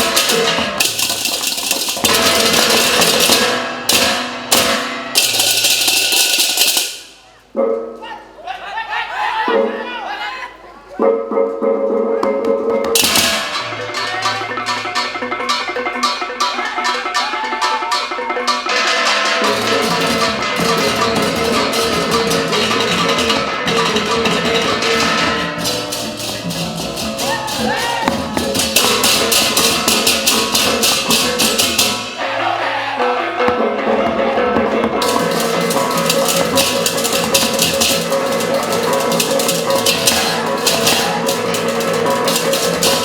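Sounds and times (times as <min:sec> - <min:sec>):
gamelan music: 0:00.0 - 0:07.0, 0:12.3 - 0:32.3, 0:33.4 - 0:43.0
drums: 0:00.0 - 0:07.8, 0:12.2 - 0:43.0
ringing metallophones: 0:12.9 - 0:32.2, 0:34.6 - 0:43.0.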